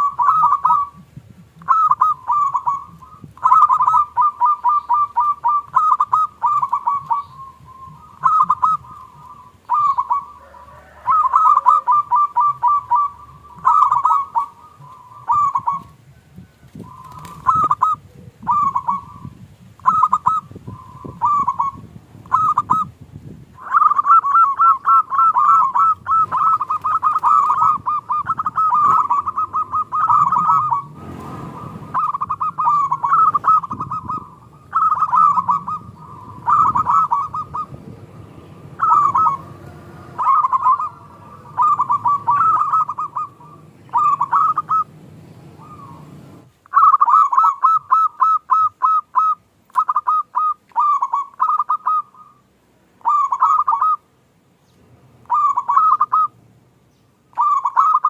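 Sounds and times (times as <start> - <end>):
doves cooing: 0.0 - 54.1, 55.2 - 56.4, 57.3 - 58.0
low rumbling background: 28.8 - 46.5.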